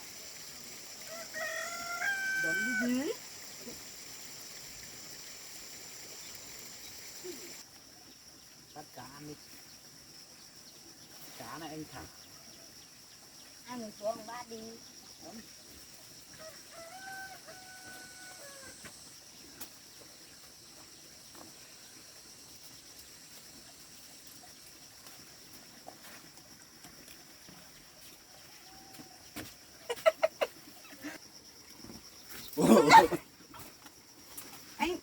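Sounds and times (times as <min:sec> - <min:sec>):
insects hissing: 0:00.0 - 0:35.0
rooster crowing: 0:01.1 - 0:03.1, 0:16.4 - 0:18.8.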